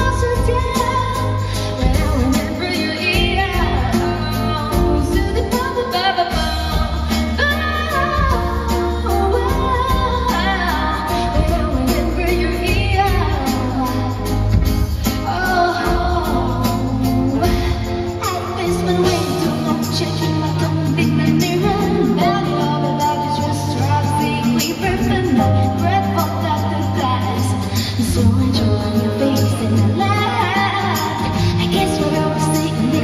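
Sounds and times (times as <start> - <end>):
woman singing pop song: 0.0 - 33.0.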